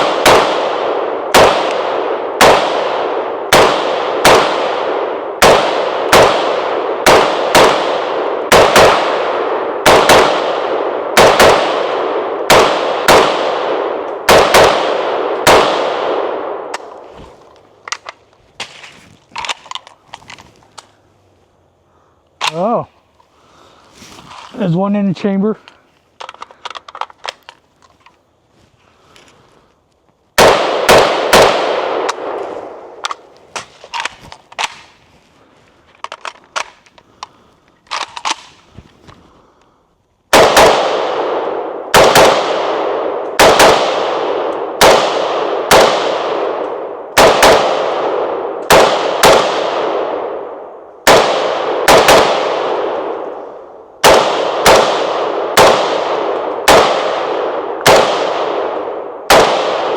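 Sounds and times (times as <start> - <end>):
rifle shots with echoing tail: 0.0 - 17.0, 30.4 - 34.8, 40.3 - 59.9.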